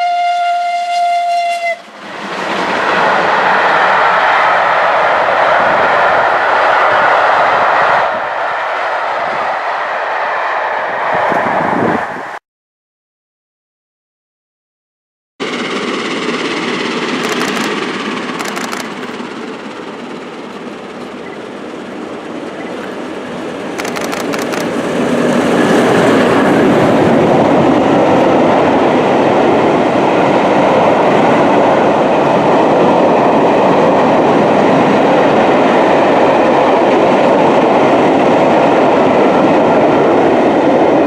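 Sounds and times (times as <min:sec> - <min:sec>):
train passing on rails: 0:00.0 - 0:12.4, 0:15.4 - 0:41.0
sharp clicks of wheels: 0:23.7 - 0:24.8.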